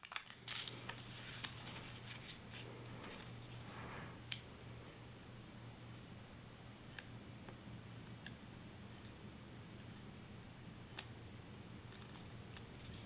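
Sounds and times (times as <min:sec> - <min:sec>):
paper sticker sheet rustling: 0:00.0 - 0:03.9.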